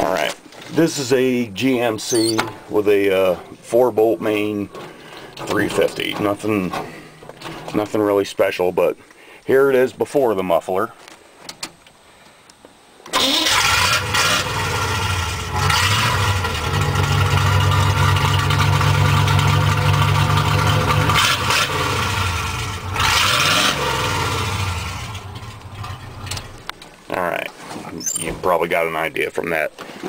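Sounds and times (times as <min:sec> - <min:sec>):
truck engine starting and revving: 0:13.1 - 0:26.6.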